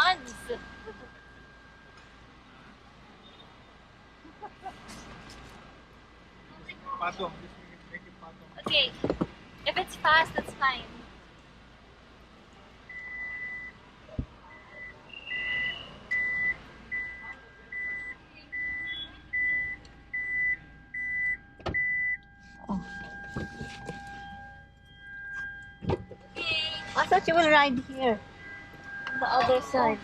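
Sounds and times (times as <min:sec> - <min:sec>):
car warning beeper short beeps: 0:14.5 - 0:30.0
steady electronic tone: 0:20.8 - 0:30.0.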